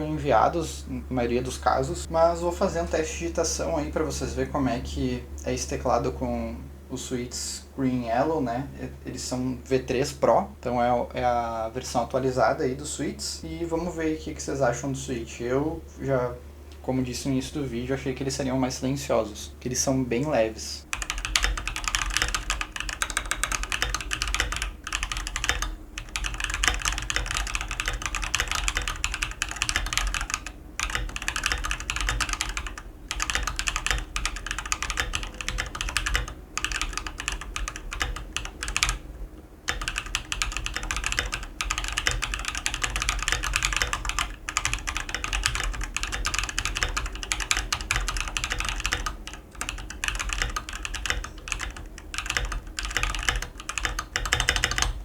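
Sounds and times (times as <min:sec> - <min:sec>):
fast typing on mechanical keyboard: 0:20.9 - 0:39.1, 0:39.7 - 0:55.0.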